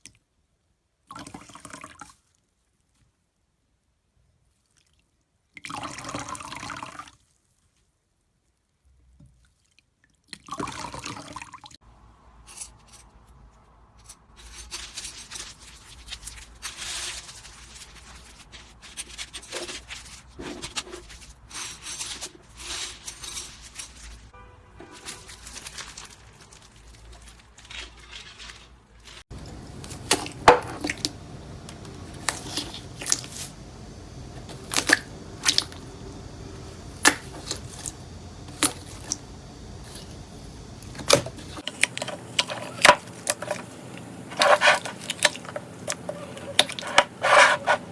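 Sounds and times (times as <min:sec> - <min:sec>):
slime squishing and popping: 0:29.6 - 0:33.6, 0:34.4 - 0:43.7.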